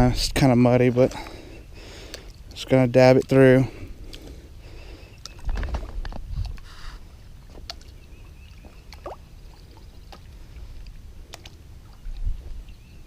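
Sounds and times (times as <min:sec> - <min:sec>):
splashing in muddy water: 0:05.2 - 0:12.7.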